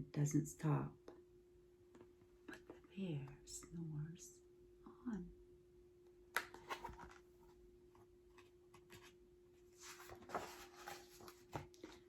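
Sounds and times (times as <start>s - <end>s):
faint steady hum: 0.0s - 12.0s
book page turning: 6.4s - 7.4s, 8.4s - 12.0s.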